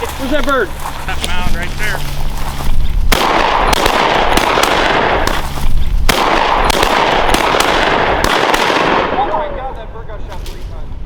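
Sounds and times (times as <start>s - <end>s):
shotgun shots: 2.3s - 9.6s.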